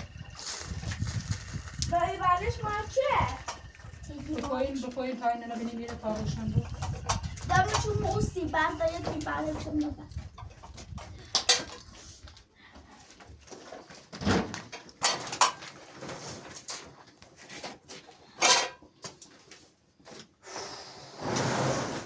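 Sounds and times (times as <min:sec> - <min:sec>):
rustling scrape: 0:15.7 - 0:18.1, 0:21.2 - 0:22.0.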